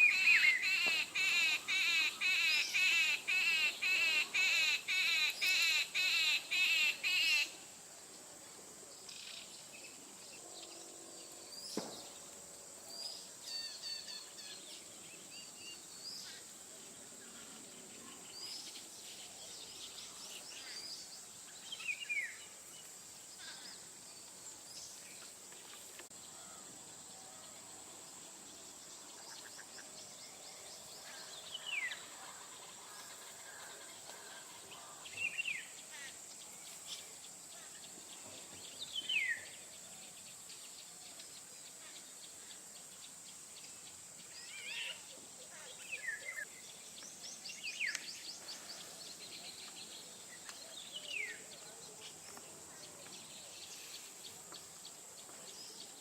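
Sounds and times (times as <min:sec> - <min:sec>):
birds chirping and trilling: 0:00.0 - 0:07.6.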